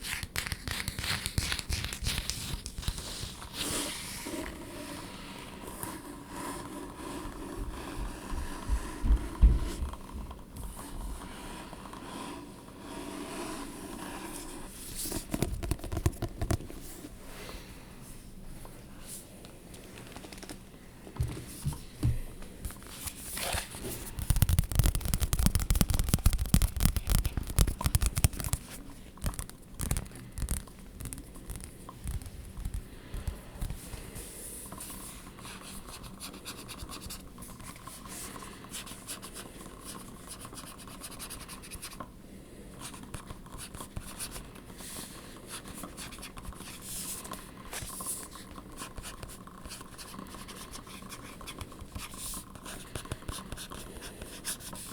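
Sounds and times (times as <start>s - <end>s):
scratching on objects: 22.7s - 34.0s.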